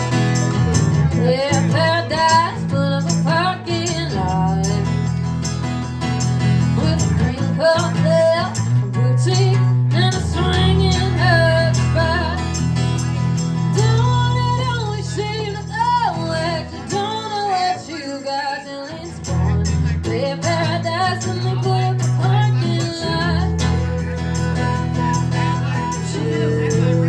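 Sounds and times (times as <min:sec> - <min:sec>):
low bass: 0:00.0 - 0:01.8, 0:21.4 - 0:27.0
guitar: 0:00.0 - 0:27.0
woman singing pop song: 0:00.9 - 0:05.2, 0:06.6 - 0:12.9, 0:13.7 - 0:27.0.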